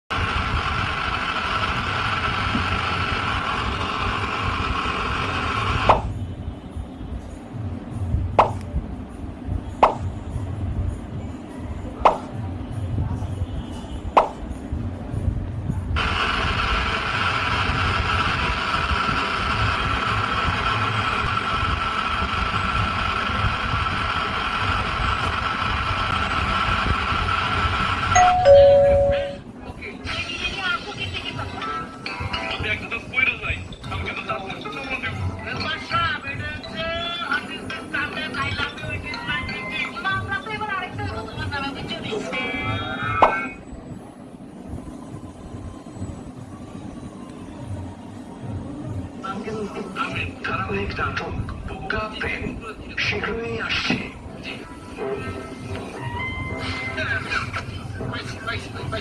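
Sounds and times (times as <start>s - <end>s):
television static hiss: 0.1s - 6.2s, 15.4s - 59.0s
constant high tone: 28.1s - 29.6s.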